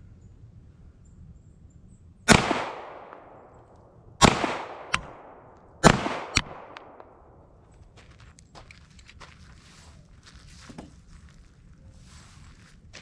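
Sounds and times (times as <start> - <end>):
sharp crack: 2.3 - 7.4
pistol shots echoing: 2.3 - 7.6.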